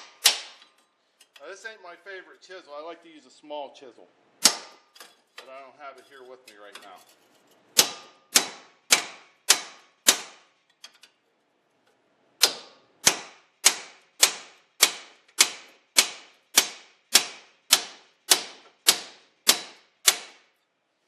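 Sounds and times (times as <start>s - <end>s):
hammer striking steel chisel: 0.0s - 1.4s, 4.4s - 5.5s, 7.8s - 11.0s, 12.4s - 20.6s.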